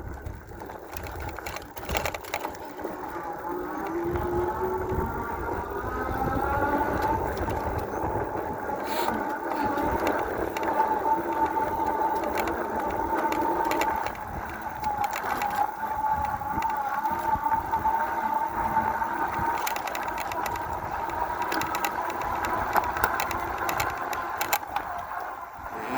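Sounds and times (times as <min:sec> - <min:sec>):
clicks and rattles: 0:00.0 - 0:03.1, 0:06.9 - 0:17.4, 0:19.4 - 0:25.2
electric bike motor whining: 0:00.0 - 0:25.9.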